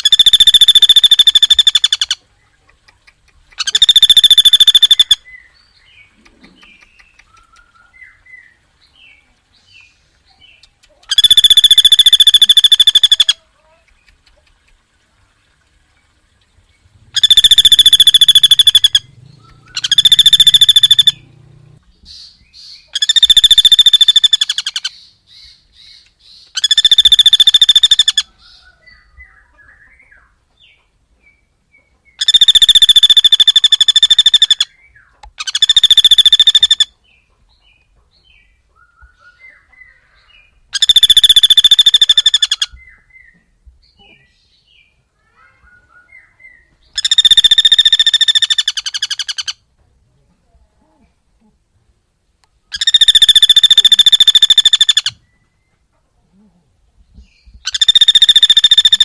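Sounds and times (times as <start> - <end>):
rasping bird calls: 0.0 - 5.4, 6.0 - 8.2, 10.5 - 14.7, 17.0 - 28.6, 32.2 - 37.0, 39.0 - 43.0, 46.9 - 49.7, 52.7 - 55.2, 57.6 - 59.0.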